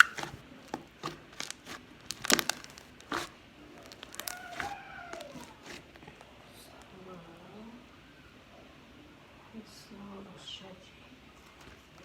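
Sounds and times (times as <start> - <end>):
slime sticky clicks and pops: 0.0 - 3.3.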